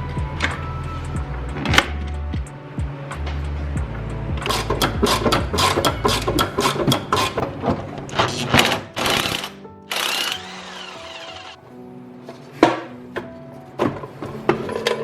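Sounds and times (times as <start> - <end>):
background music: 0.0 - 15.0
hand tools knocking on metal: 4.4 - 7.8.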